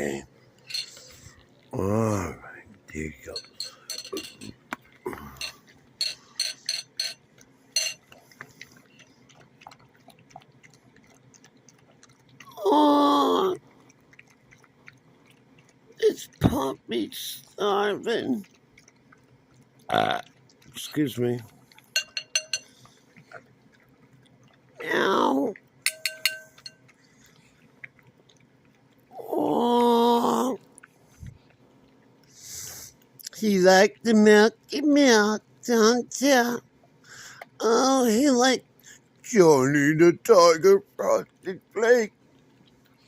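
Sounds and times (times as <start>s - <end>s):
puppy lapping from a bowl: 0.4s - 12.6s, 13.4s - 29.2s
person saying oh: 12.5s - 13.6s, 29.2s - 30.6s.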